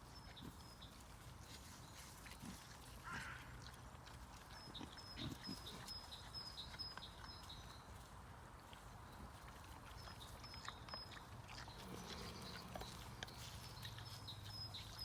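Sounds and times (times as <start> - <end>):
boar snoring faintly: 11.6 - 13.6.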